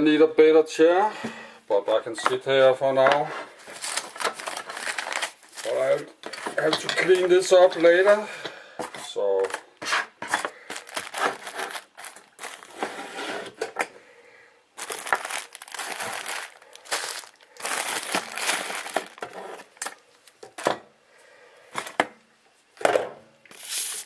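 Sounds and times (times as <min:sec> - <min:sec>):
crinkling and rustling on a table: 0:02.2 - 0:14.0, 0:14.8 - 0:20.8.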